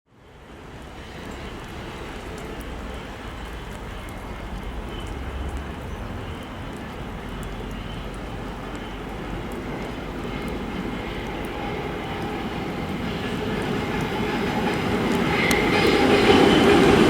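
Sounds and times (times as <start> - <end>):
faint high ticks: 1.2 - 10.6, 15.1 - 15.9.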